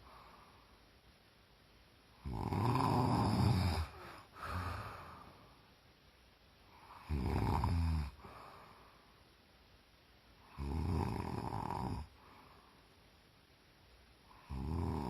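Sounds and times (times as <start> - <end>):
woman snoring: 2.2 - 5.3, 6.8 - 8.5, 10.4 - 12.2, 14.3 - 15.0
soft breath out: 3.8 - 5.7, 8.2 - 9.3, 12.2 - 13.0.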